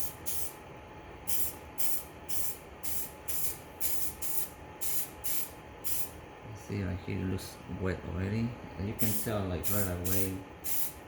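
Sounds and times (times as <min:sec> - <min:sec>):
aerosol can spraying: 0:00.0 - 0:00.5, 0:01.3 - 0:06.1, 0:09.0 - 0:11.0.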